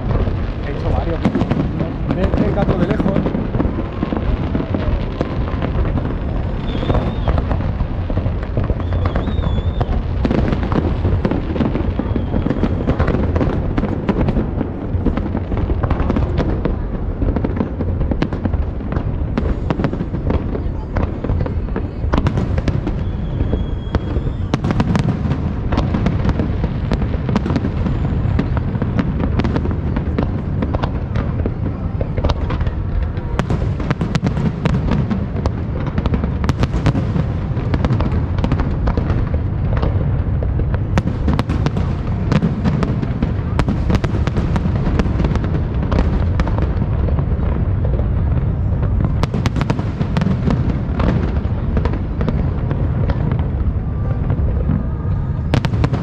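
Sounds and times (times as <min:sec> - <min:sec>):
fireworks cracking and popping: 0:00.0 - 0:56.0
low rumble of fireworks booms: 0:00.0 - 0:56.0.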